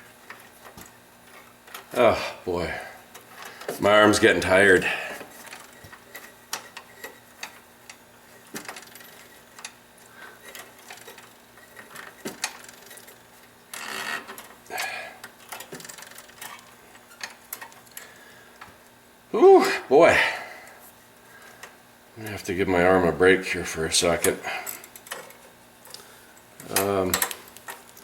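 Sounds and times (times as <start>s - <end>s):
small metallic clicks and ticks: 5.3s - 9.8s, 15.2s - 19.0s, 24.7s - 26.0s, 26.6s - 28.0s.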